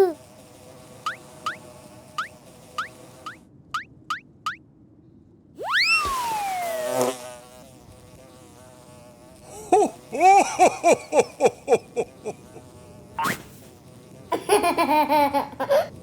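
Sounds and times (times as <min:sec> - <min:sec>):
cartoon bee buzzing and chattering: 0:00.0 - 0:04.6, 0:05.6 - 0:16.0
cartoon falling pitch slide: 0:05.6 - 0:07.2, 0:13.2 - 0:13.6.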